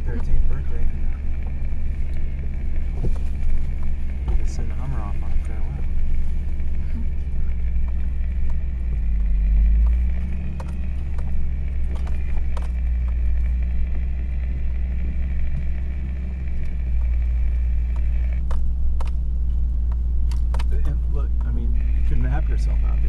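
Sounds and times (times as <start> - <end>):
faint high whine: 0.0 - 18.5, 20.6 - 23.0
engine and drivetrain rumble: 0.0 - 23.0
small knocks and rattles: 7.5 - 14.4.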